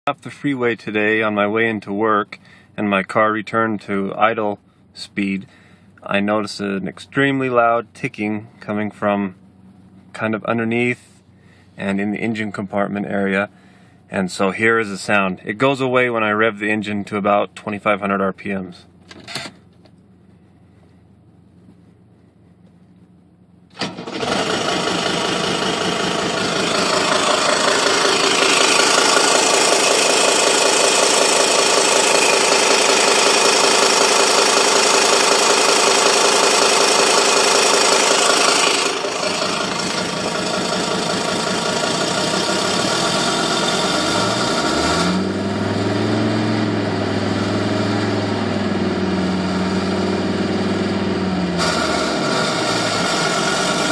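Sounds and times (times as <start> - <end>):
diesel engine idling: 0.1 - 12.6, 13.3 - 15.2, 17.5 - 53.9
rhythmic engine tick and rattle: 16.5 - 45.2, 51.4 - 53.9.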